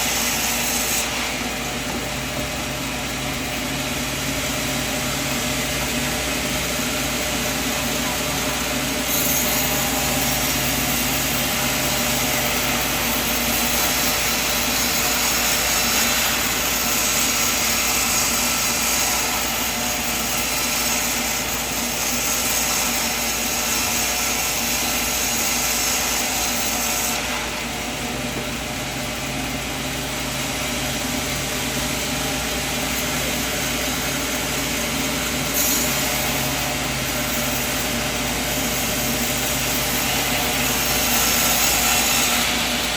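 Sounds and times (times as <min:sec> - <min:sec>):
band saw cutting timber: 0:00.0 - 0:42.9.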